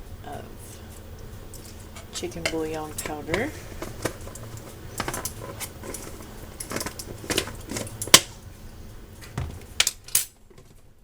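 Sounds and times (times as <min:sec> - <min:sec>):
low steady hum: 0:00.0 - 0:10.5
utensils clicking and clinking: 0:01.5 - 0:08.4, 0:09.2 - 0:10.3.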